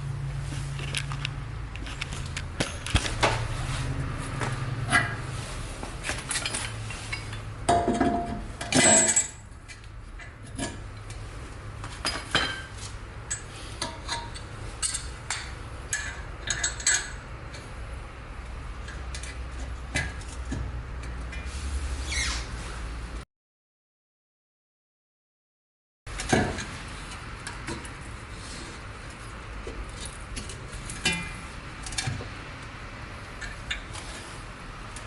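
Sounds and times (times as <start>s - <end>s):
metal clatter: 6.0s - 11.2s.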